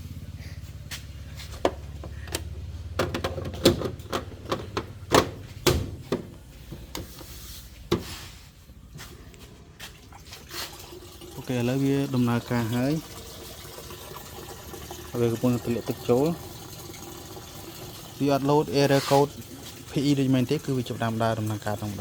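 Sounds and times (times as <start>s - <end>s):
washing machine motor hum: 0.0s - 22.0s
washing machine clicks and knocks: 1.6s - 7.2s, 7.9s - 8.1s.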